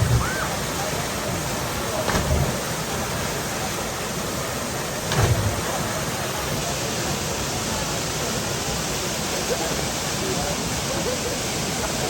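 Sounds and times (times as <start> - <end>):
waterfall pouring into pool: 0.0 - 12.0
low thump: 2.1 - 2.6, 5.0 - 5.7.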